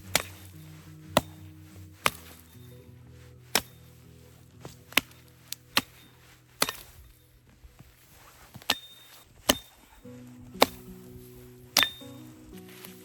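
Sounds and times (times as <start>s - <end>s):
axe chopping wood: 0.0s - 2.7s, 3.4s - 4.0s, 4.6s - 7.2s, 8.5s - 12.9s
soft background music: 0.0s - 13.0s.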